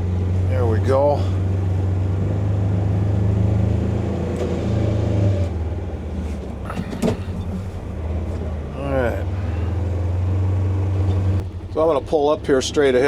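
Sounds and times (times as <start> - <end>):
engine running under load: 0.0 - 13.0
plow pushing wet snow: 0.0 - 13.0
short clatter: 3.8 - 8.8.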